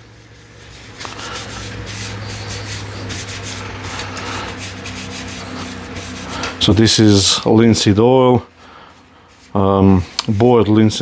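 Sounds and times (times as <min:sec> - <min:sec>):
cloth rubbing on wood: 0:00.0 - 0:07.5, 0:08.9 - 0:10.5
motor hum: 0:00.0 - 0:07.5.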